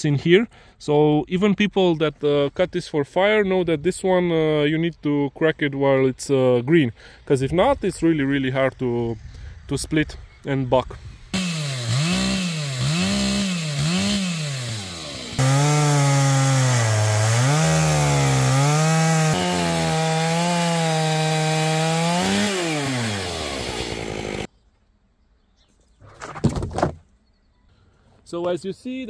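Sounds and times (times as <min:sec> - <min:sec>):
chainsaw cutting log: 0:11.4 - 0:24.5.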